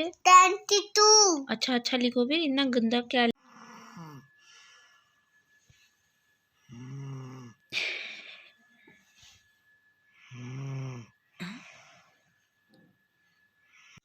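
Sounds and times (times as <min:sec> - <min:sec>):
child snoring: 0:03.4 - 0:04.3, 0:06.7 - 0:08.4, 0:10.2 - 0:12.2.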